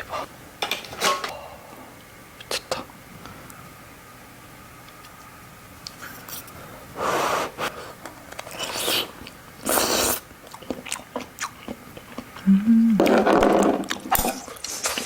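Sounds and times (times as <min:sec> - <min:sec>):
chewing shellfish: 0:08.3 - 0:15.0.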